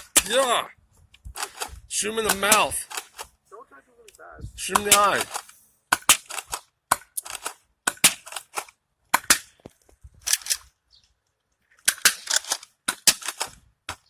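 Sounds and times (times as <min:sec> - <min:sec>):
sharp plastic clacks: 0:01.2 - 0:03.3, 0:04.6 - 0:10.7, 0:11.3 - 0:14.0.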